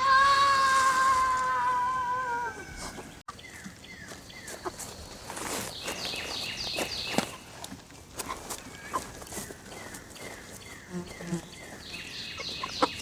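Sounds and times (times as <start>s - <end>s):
birds chirping: 2.4s - 7.7s, 8.5s - 13.0s
footsteps: 2.8s - 13.0s.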